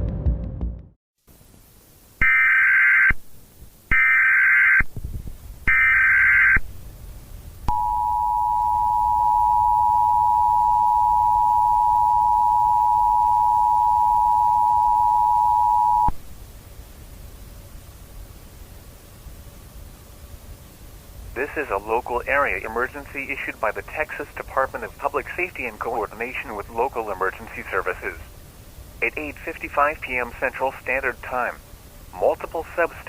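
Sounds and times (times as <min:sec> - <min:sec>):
faint hiss: 0:01.2 - 0:02.5, 0:06.6 - 0:09.0, 0:16.1 - 0:33.0
two-tone attention signal: 0:07.7 - 0:16.1.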